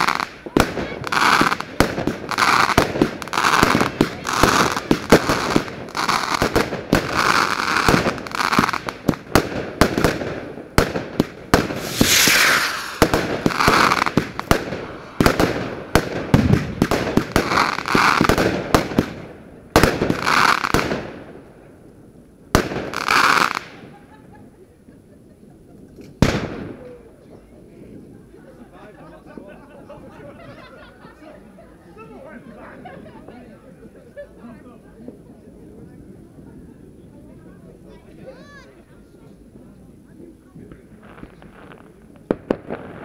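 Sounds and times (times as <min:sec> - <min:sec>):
hissing firework burst: 0:00.0 - 0:21.4
fireworks bangs and crackling: 0:00.0 - 0:25.0, 0:25.7 - 0:31.2, 0:34.8 - 0:43.0.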